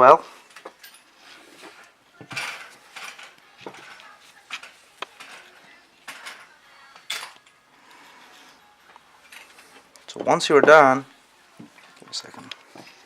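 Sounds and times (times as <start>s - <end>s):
metal parts and tools clinking: 0.4s - 1.3s, 2.3s - 7.6s, 9.2s - 9.8s.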